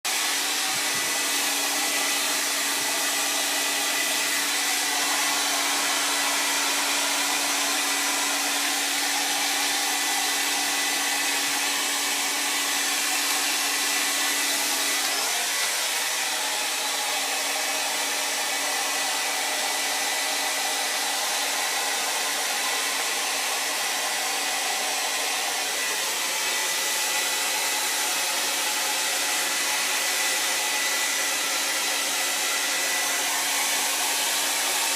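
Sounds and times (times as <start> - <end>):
hair dryer blowing air: 0.0 - 34.9.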